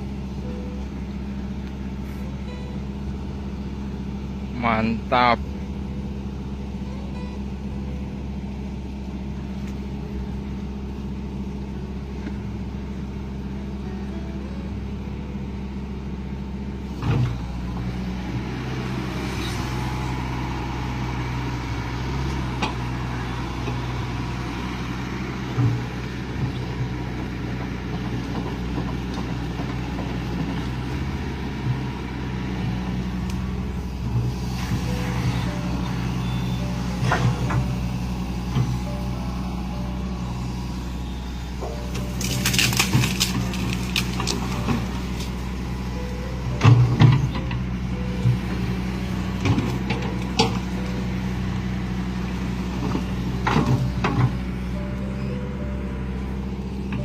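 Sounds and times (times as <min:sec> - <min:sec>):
excavator diesel engine running: 0:00.0 - 0:57.0.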